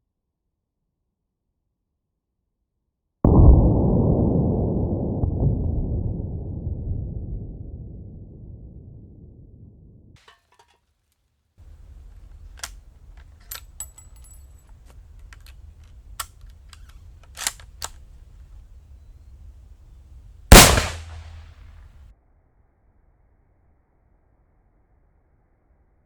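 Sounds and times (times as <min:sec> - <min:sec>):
low rumble: 0:03.3 - 0:10.2, 0:20.5 - 0:21.5
rifle bolt clicks and knocks: 0:11.9 - 0:18.0
rifle shot: 0:20.5 - 0:21.7.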